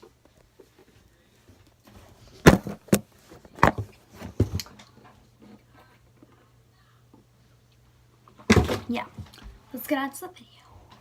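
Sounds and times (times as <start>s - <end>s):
hard objects knocking and thumping: 2.4s - 4.7s.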